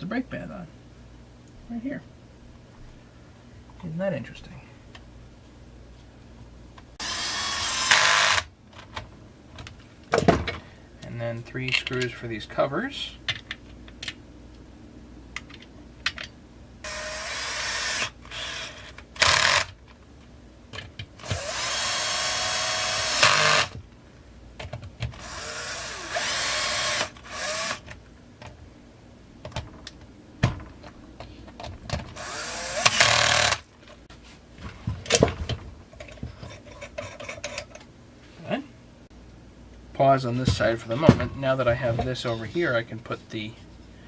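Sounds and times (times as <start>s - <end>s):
power drill motor whine: 7.0s - 8.5s, 16.8s - 19.7s, 21.2s - 23.8s, 25.2s - 27.8s, 32.2s - 33.6s.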